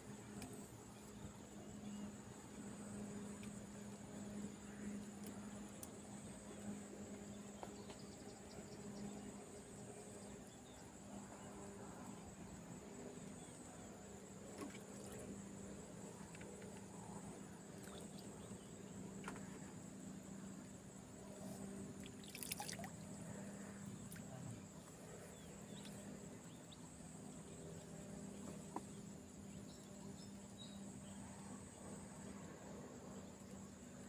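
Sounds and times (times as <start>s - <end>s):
low steady hum: 0.0s - 34.0s
high-pitched insect chorus: 14.7s - 34.0s.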